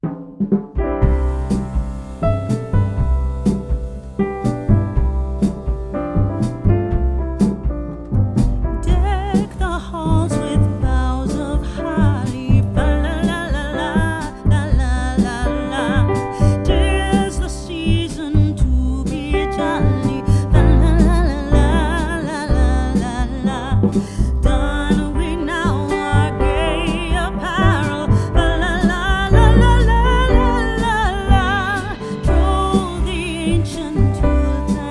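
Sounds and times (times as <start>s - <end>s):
music with bass and beat: 0.5s - 34.9s
person singing: 8.9s - 34.9s.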